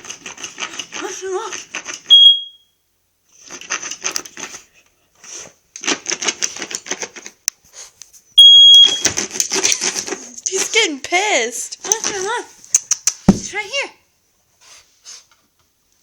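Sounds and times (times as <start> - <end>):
smoke detector beep: 2.1 - 2.8, 8.4 - 9.1.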